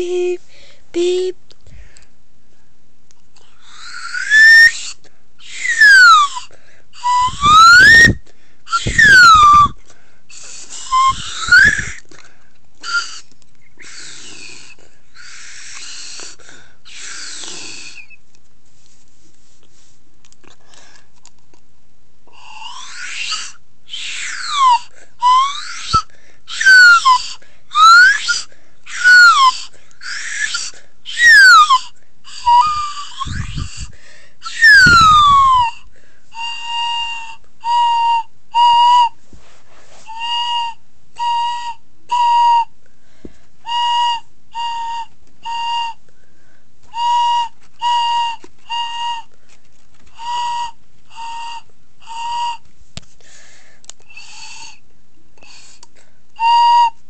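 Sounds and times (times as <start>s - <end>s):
child imitating alarm siren: 5.4s - 9.7s, 26.6s - 33.9s, 34.5s - 35.8s, 44.0s - 46.0s, 47.2s - 49.3s, 50.1s - 52.6s.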